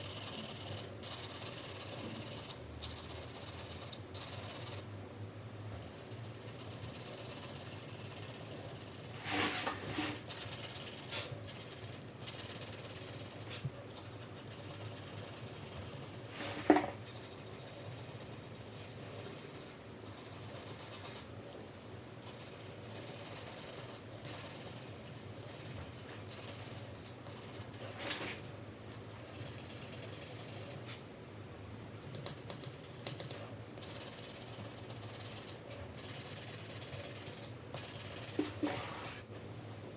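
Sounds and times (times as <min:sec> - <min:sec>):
pencil shading on paper: 0:32.3 - 0:39.0.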